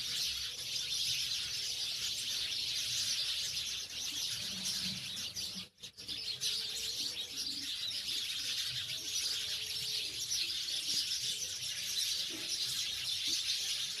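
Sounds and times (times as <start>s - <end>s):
sparrows chirping: 0.0s - 14.0s.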